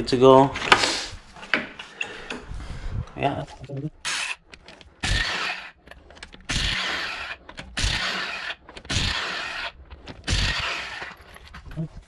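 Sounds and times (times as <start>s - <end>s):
impact wrench bursts: 5.0s - 5.8s, 6.4s - 11.2s.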